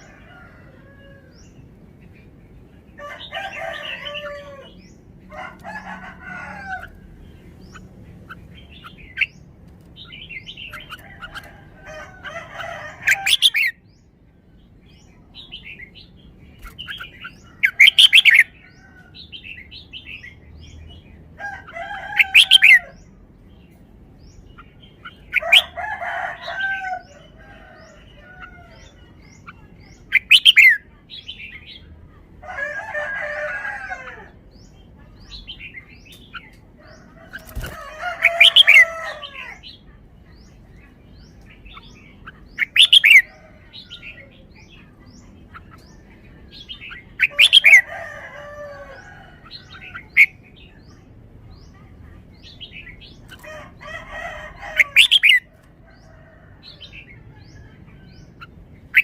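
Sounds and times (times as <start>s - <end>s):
rooster crowing: 0.0s - 1.5s, 3.0s - 7.2s, 11.0s - 13.7s, 21.4s - 23.0s, 25.4s - 29.0s, 32.4s - 34.4s, 36.9s - 39.7s, 47.2s - 50.2s, 53.4s - 58.3s.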